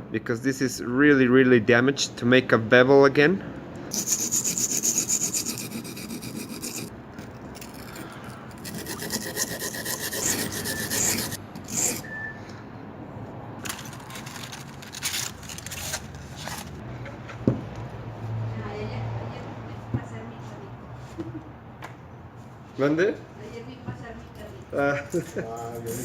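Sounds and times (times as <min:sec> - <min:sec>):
knife grinding on sharpening stone: 0:03.9 - 0:12.3, 0:25.7 - 0:26.0.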